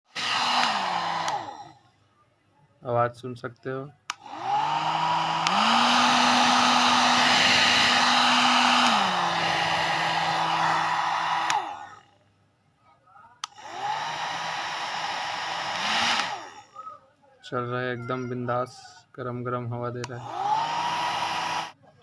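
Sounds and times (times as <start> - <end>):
hair dryer blowing: 0.1 - 1.7, 4.2 - 12.0, 13.4 - 16.6, 20.1 - 21.8
hair dryer switch click: 0.4 - 1.4, 4.1 - 4.4, 5.3 - 7.1, 7.8 - 9.1, 11.2 - 11.7, 13.4 - 13.7.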